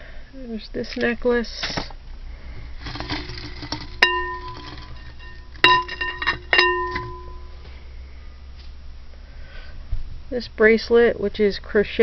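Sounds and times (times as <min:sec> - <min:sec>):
jewelry clinking against glass jar: 0:02.8 - 0:07.6
glass jar ringing: 0:03.0 - 0:07.6.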